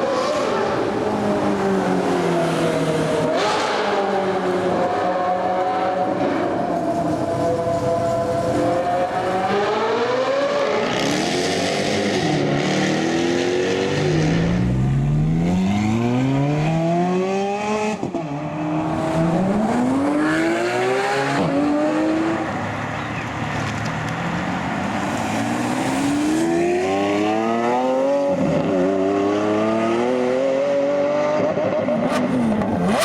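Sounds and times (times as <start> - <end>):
sports car engine accelerating: 8.7 - 33.0.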